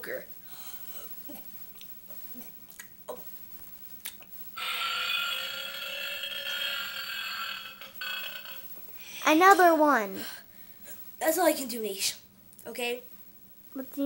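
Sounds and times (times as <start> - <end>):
boy burping: 4.6 - 8.7.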